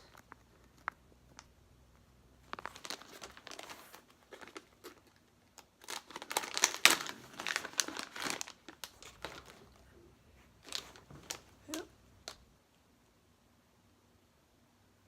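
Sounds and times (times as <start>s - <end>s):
plastic packaging crinkling: 0.0s - 9.9s, 10.6s - 12.5s.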